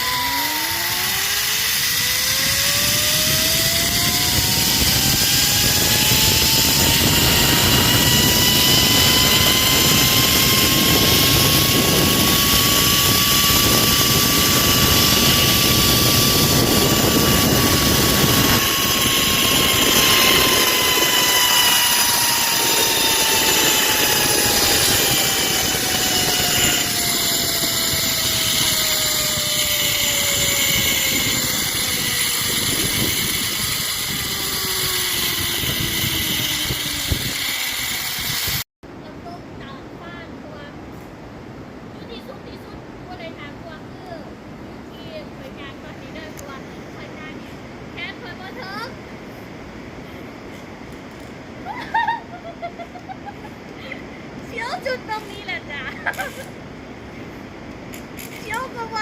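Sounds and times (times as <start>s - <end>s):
zipline pulleys whining on cable: 0.0s - 38.7s, 44.9s - 59.0s
steady rushing noise: 0.0s - 39.4s.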